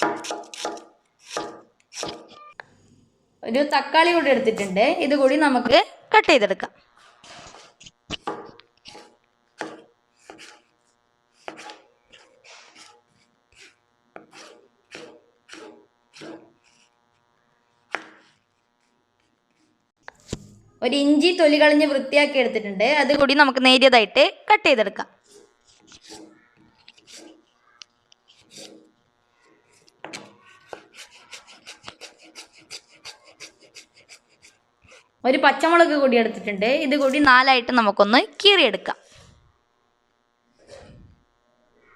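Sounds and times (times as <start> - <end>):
knife cutting tomato on board: 0.0 - 2.4, 7.2 - 10.7, 11.4 - 13.0, 13.6 - 16.9, 17.9 - 18.4, 25.3 - 27.5, 28.3 - 28.9, 29.7 - 35.0.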